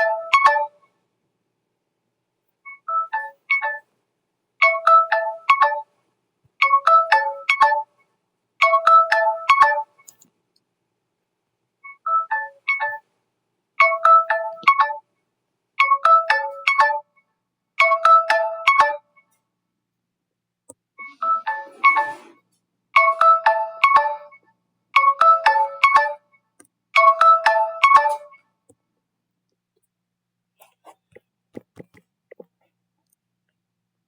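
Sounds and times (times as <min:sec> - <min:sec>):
mobile phone ringtone melody: 0:00.0 - 0:00.8, 0:02.9 - 0:03.8, 0:04.6 - 0:05.9, 0:06.6 - 0:07.9, 0:08.6 - 0:10.0, 0:11.9 - 0:13.0, 0:13.8 - 0:15.0, 0:15.8 - 0:17.1, 0:17.8 - 0:19.1, 0:21.0 - 0:22.4, 0:23.0 - 0:24.4, 0:25.0 - 0:26.3, 0:27.0 - 0:28.4.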